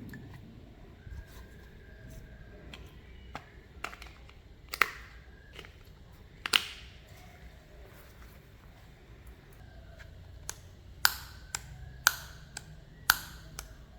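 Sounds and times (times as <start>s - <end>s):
faint low hum: 0.0s - 13.9s
sharp clicks and snaps: 3.8s - 7.0s, 10.4s - 13.9s.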